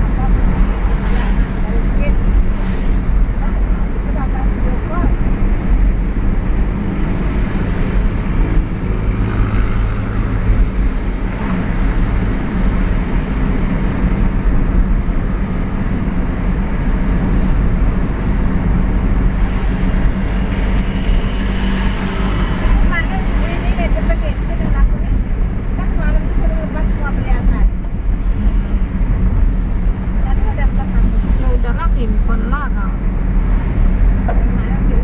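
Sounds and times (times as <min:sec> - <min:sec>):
car engine hum: 0:00.0 - 0:35.0
road rumble: 0:00.0 - 0:35.0.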